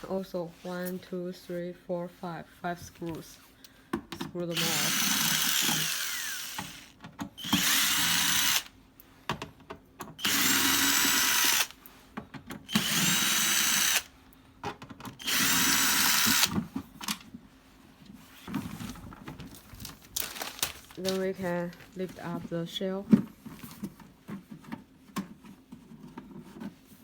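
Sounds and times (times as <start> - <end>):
electric screwdriver motor: 4.5 - 8.7, 10.2 - 11.8, 12.7 - 14.1, 15.2 - 16.6.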